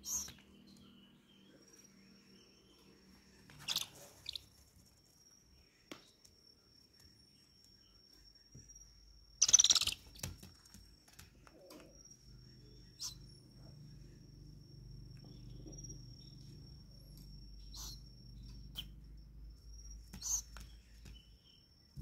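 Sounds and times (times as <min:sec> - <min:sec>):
owl chicks hiss-screeching: 0:00.0 - 0:00.4, 0:03.6 - 0:04.6, 0:09.4 - 0:10.3, 0:17.7 - 0:18.1, 0:20.2 - 0:20.6
cricket trill: 0:00.0 - 0:22.0.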